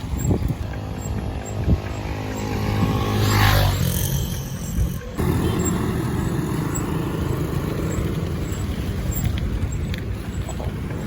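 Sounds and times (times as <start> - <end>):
motor vehicle rumbling: 0.0 - 11.0.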